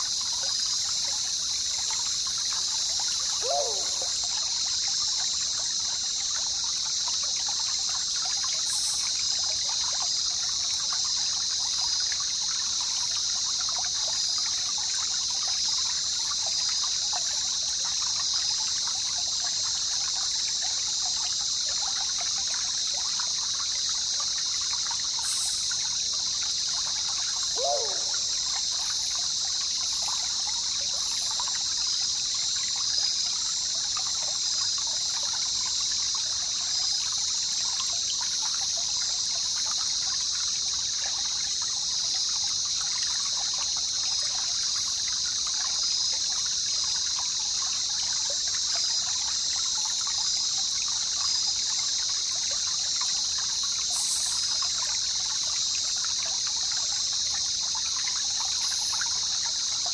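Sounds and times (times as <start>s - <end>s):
river water babbling: 0.0s - 59.9s.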